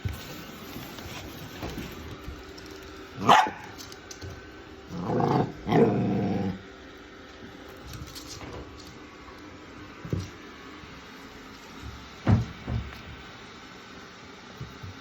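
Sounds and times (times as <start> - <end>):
dog barking: 3.2 - 3.8.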